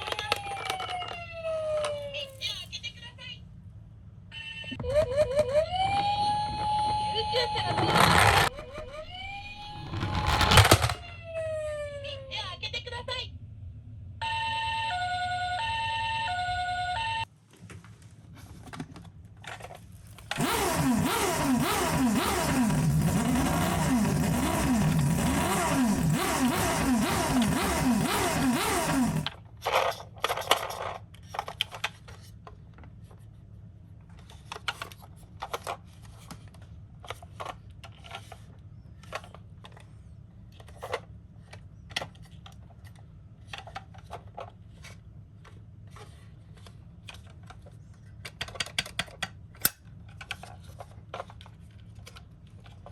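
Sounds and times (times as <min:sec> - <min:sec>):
toy two-tone siren: 0:00.0 - 0:02.4, 0:04.8 - 0:08.2, 0:14.2 - 0:17.3
plastic toy cars clacking: 0:06.9 - 0:11.0, 0:18.5 - 0:33.3, 0:34.0 - 0:52.9.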